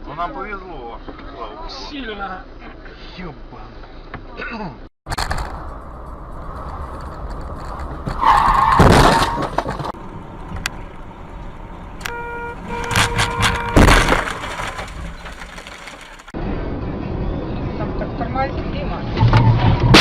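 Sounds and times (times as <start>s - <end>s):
road noise: 0.0s - 20.0s
car crash: 5.1s - 16.4s, 19.2s - 20.0s
tyre squeal: 8.0s - 9.9s, 12.1s - 16.3s
car horn: 12.0s - 16.0s.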